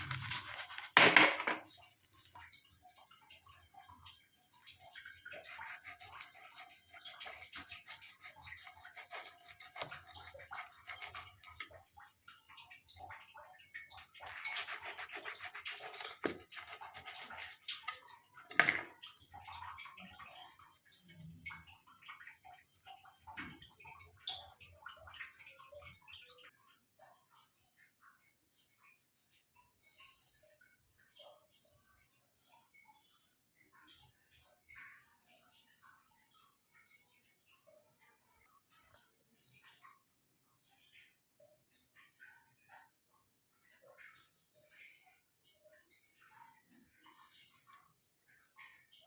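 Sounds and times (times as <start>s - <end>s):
rubbing and scraping: 0.0s - 2.2s, 5.3s - 11.8s, 14.0s - 18.8s.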